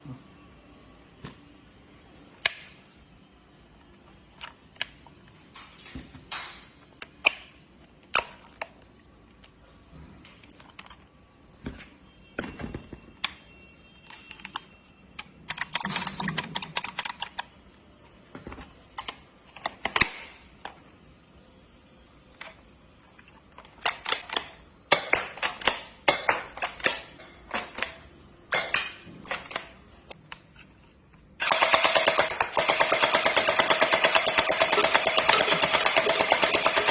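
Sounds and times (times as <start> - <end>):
plastic toy parts clicking: 3.8 - 5.3, 6.3 - 9.6, 10.3 - 11.1, 14.0 - 17.6, 23.2 - 36.9.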